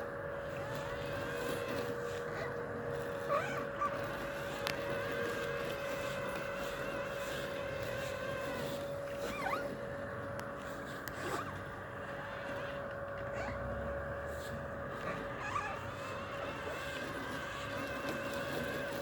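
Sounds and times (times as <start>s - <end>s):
robotic lawn mower motor whine: 0.0s - 19.0s
wheel squeaking: 0.4s - 9.9s, 15.0s - 19.0s.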